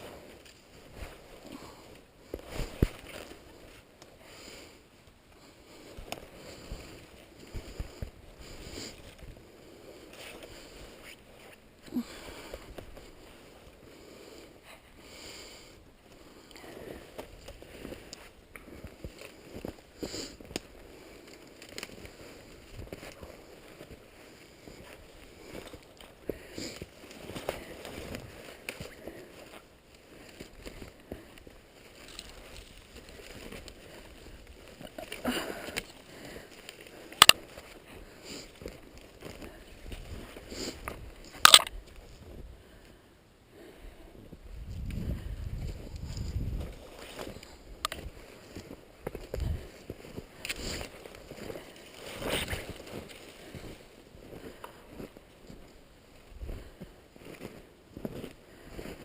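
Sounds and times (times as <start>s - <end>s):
snowshoes crunching through snow: 16.2s - 42.4s, 44.3s - 59.0s.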